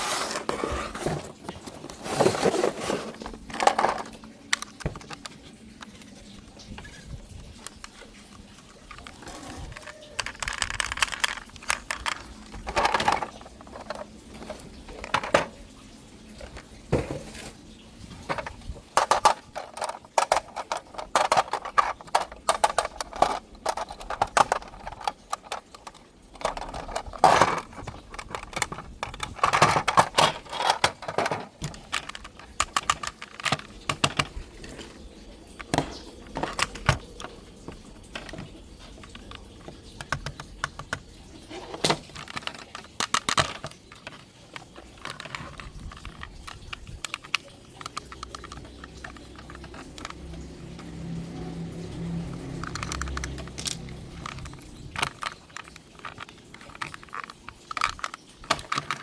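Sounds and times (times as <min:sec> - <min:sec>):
rapid clicking and clattering: 0:00.4 - 0:15.6, 0:18.2 - 0:59.0.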